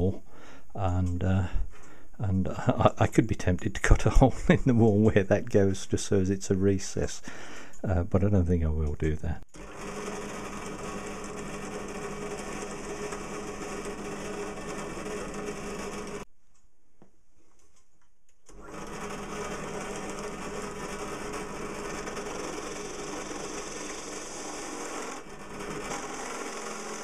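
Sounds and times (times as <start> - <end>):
small motor humming: 9.6 - 16.3, 18.5 - 27.0.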